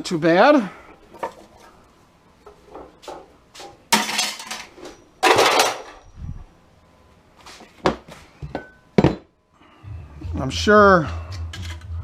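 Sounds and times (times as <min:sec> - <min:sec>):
scrap metal clattering: 0:03.1 - 0:06.0
metal crashing on metal: 0:03.9 - 0:06.0.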